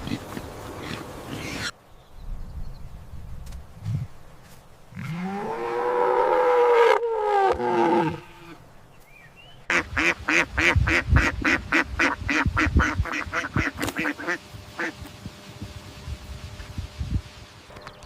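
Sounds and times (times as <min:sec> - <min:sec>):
cow mooing: 0:05.0 - 0:08.6.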